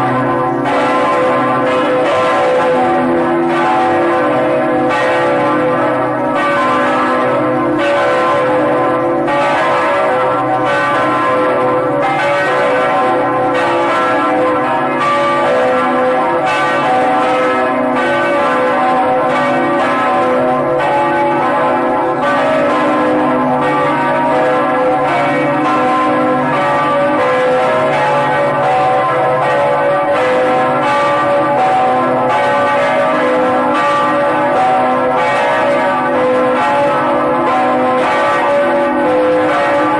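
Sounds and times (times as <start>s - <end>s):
bells ringing in a peal: 0.0s - 39.9s.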